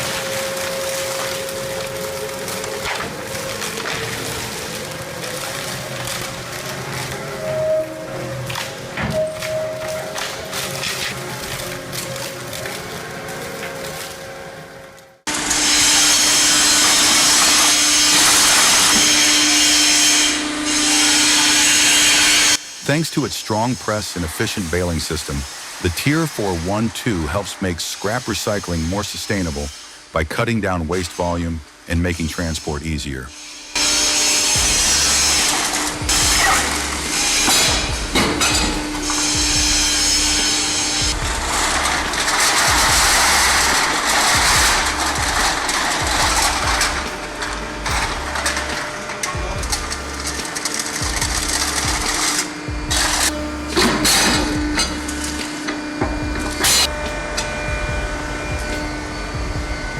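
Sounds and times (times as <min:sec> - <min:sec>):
scrap machine grinding: 0:00.0 - 0:30.1, 0:33.4 - 0:59.9
constant machine hum: 0:00.0 - 0:59.9
background music with low beat: 0:34.5 - 0:59.9.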